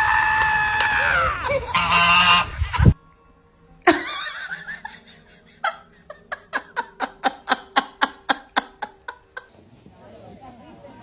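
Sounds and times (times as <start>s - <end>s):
person laughing: 3.9s - 9.5s.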